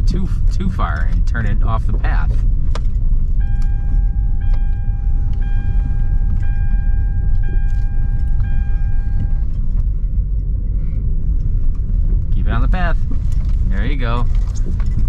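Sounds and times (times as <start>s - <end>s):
road and engine rumble: 0.0s - 15.0s
dashboard warning chime: 3.4s - 9.8s.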